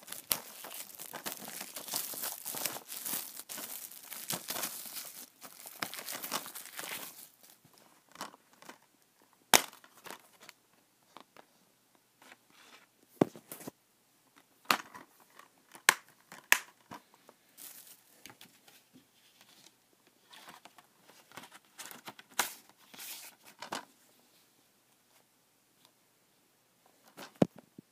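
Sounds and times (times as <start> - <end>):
plastic film tearing and crinkling: 0.0 - 7.6
plastic case clicks and snaps: 15.7 - 16.8.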